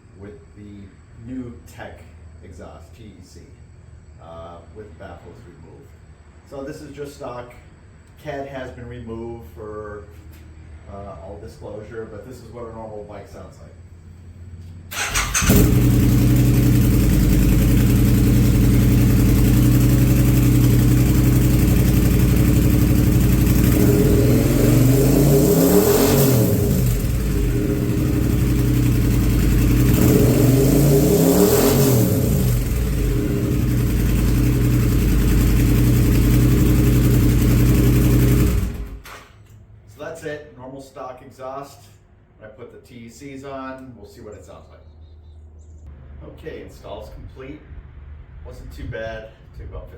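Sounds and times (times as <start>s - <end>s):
motorcycle engine idling and revving: 14.9s - 39.1s.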